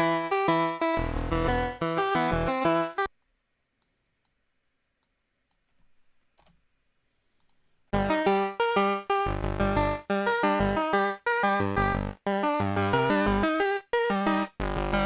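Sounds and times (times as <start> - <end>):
faint clicks: 7.4 - 7.6
synthesizer melody: 14.1 - 15.0.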